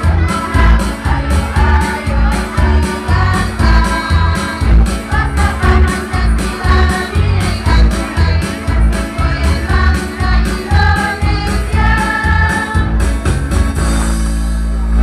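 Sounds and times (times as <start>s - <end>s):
choir singing: 0.0s - 12.9s
backing track with heavy bass: 0.0s - 15.0s.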